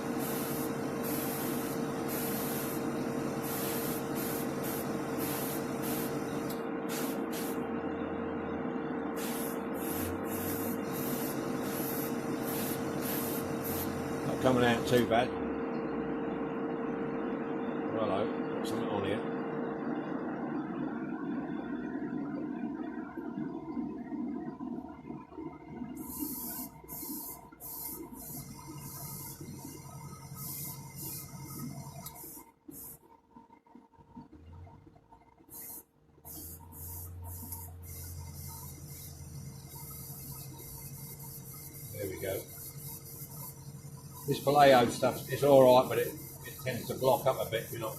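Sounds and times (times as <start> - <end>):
airbrush spraying hiss: 0.0 - 7.6, 9.2 - 14.9, 26.0 - 33.0, 35.5 - 47.9
steady hum: 0.0 - 47.9.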